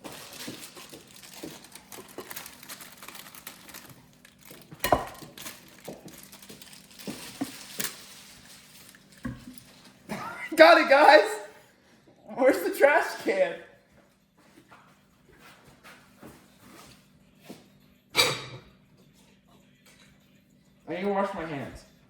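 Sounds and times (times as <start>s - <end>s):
packaging crinkling and rustling: 0.0s - 10.0s.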